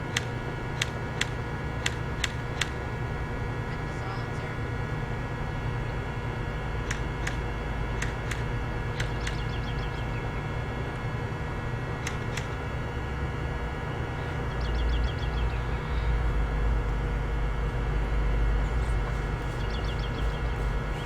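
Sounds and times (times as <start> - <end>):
low background rumble: 0.0 - 21.0
airsoft rifle clicks: 6.8 - 7.4, 8.0 - 9.4, 12.0 - 12.6
faint ticks: 9.0 - 9.5.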